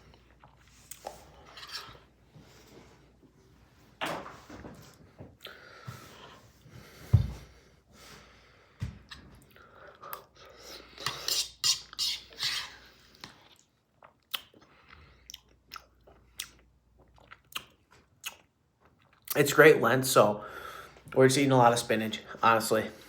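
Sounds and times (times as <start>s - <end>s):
person chewing: 0.0s - 2.0s, 9.1s - 19.4s
wet mouth clicks and smacks: 14.1s - 14.6s, 17.2s - 18.5s.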